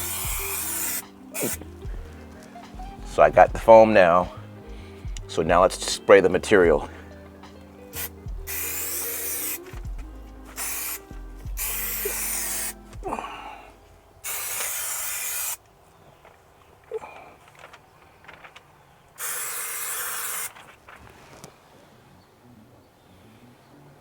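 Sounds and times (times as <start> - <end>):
aerosol can hissing: 0.0 - 1.7, 7.9 - 9.9, 10.5 - 12.8, 14.2 - 15.6, 19.2 - 20.6.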